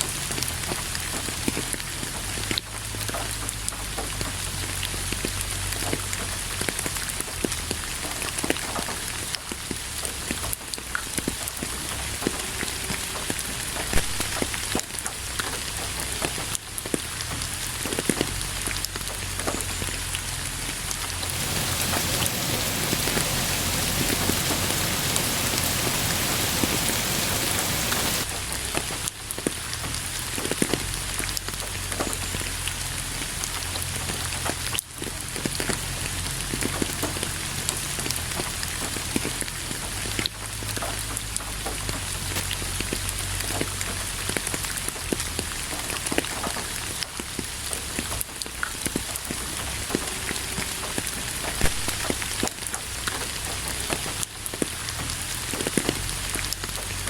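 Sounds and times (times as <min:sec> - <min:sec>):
steady rain falling: 0:00.0 - 0:57.0
raindrops landing sharply: 0:10.4 - 0:14.9, 0:20.7 - 0:28.4, 0:48.8 - 0:53.2.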